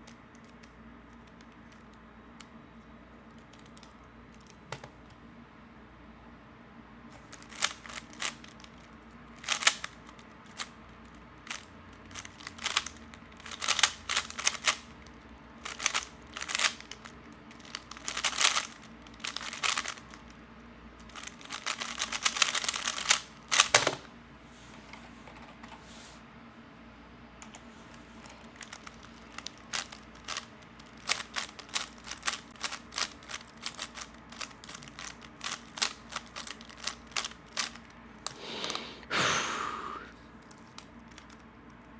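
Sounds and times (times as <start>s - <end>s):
puzzle cube plastic clicking: 0.0s - 2.6s, 3.3s - 5.2s, 7.3s - 15.0s, 15.6s - 20.2s, 21.0s - 24.0s, 28.3s - 39.1s.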